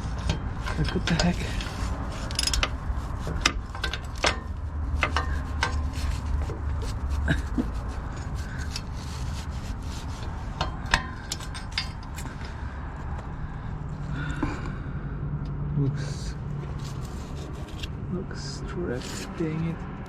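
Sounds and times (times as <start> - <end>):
wrench clicking and scraping on bolt: 0.0 - 13.3.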